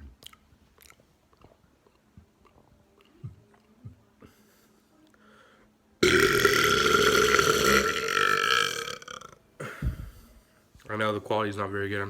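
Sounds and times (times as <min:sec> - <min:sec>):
man burping loudly: 0:06.0 - 0:09.9.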